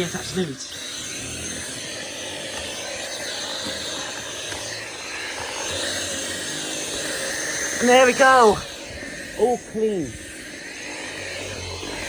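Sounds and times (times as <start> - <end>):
cordless vacuum running: 0.0 - 12.0.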